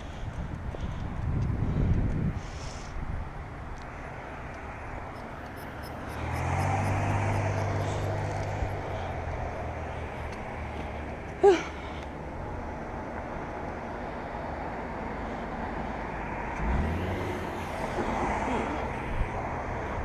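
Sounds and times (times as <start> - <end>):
passing vehicle engine: 0.0 - 20.0
wind and road noise: 0.0 - 20.0.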